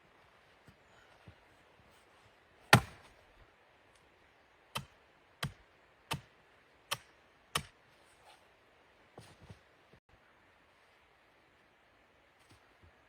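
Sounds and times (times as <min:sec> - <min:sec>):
sharp chopping strikes: 0:02.7 - 0:03.1.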